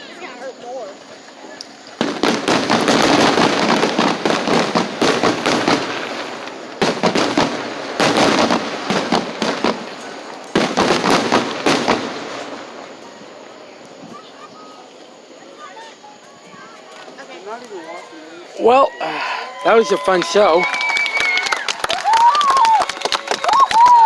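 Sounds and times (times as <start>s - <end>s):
fireworks crackling pops: 0.0s - 15.0s, 20.1s - 24.0s.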